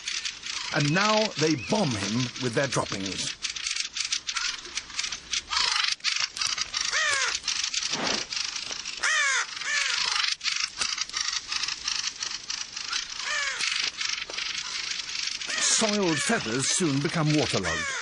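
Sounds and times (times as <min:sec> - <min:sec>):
birds chattering alarm calls: 0:00.0 - 0:18.0
raven cawing: 0:03.3 - 0:18.0.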